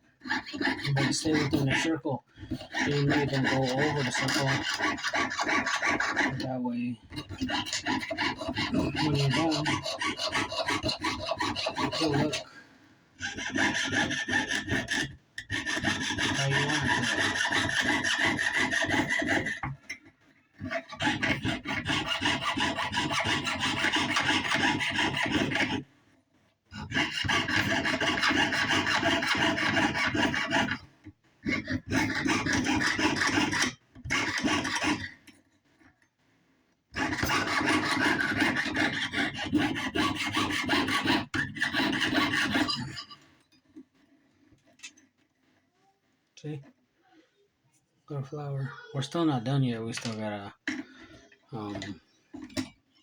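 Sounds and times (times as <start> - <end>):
saw cutting sheet metal: 0.2 - 12.5, 13.2 - 19.8, 20.6 - 25.8, 26.8 - 30.9, 31.5 - 35.2, 37.0 - 43.2.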